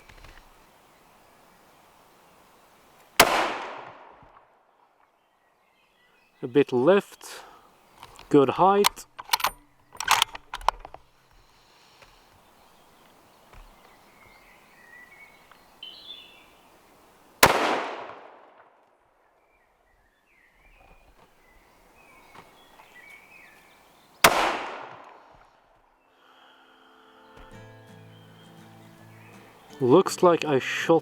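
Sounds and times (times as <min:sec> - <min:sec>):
rifle shots: 0:03.2 - 0:04.3, 0:17.4 - 0:18.7, 0:24.2 - 0:25.2.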